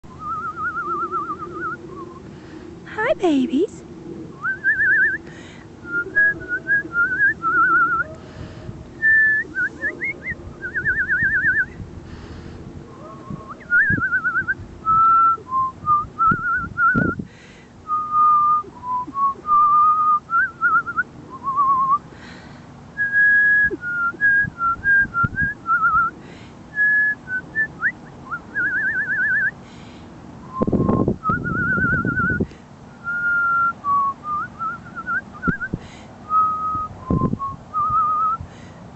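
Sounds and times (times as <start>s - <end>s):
low rumbling noise: 0.0s - 38.6s
person whistling trills: 0.1s - 2.3s, 4.4s - 8.1s, 9.0s - 11.8s, 13.2s - 17.2s, 17.9s - 22.0s, 26.8s - 29.6s, 30.4s - 32.4s, 33.0s - 38.4s.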